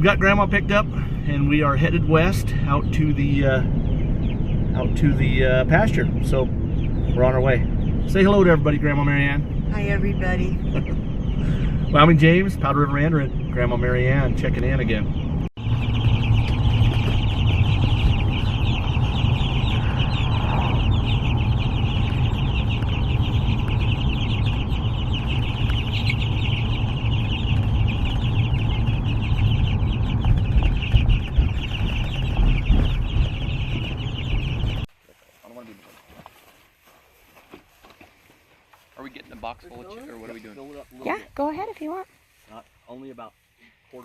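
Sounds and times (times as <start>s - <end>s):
chicks peeping: 0.0s - 34.9s, 38.8s - 43.2s
low rumble: 0.0s - 34.9s.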